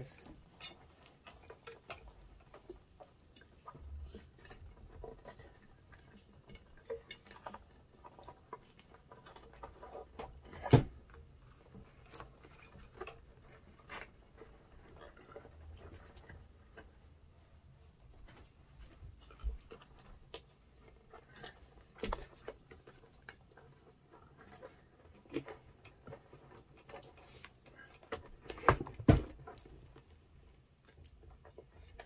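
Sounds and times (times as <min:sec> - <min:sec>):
rubbing and scratching of rubber: 0:00.0 - 0:32.0.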